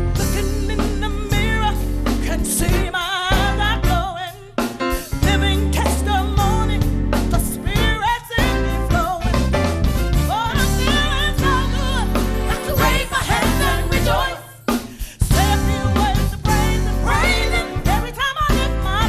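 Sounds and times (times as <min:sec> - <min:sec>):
bass: 0:00.0 - 0:19.0
drum kit: 0:00.0 - 0:19.0
woman singing with vibrato: 0:10.3 - 0:19.0.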